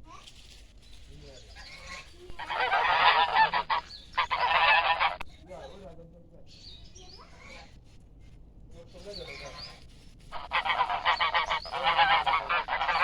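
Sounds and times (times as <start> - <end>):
geese honking: 2.4 - 5.2, 10.3 - 13.0.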